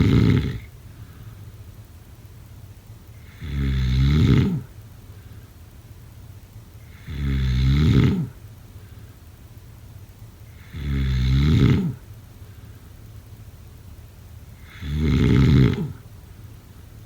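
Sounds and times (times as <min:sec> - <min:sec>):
person snoring: 0:00.0 - 0:00.7, 0:03.2 - 0:04.7, 0:06.9 - 0:08.4, 0:10.5 - 0:12.0, 0:14.6 - 0:16.0.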